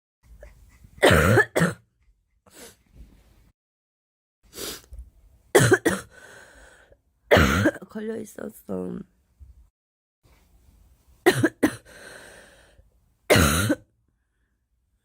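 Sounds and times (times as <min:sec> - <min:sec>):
girl coughing: 0:01.0 - 0:01.8, 0:05.6 - 0:06.1, 0:07.3 - 0:07.8, 0:11.3 - 0:11.9, 0:13.3 - 0:13.9
quiet breaths: 0:06.1 - 0:07.0, 0:11.8 - 0:13.0.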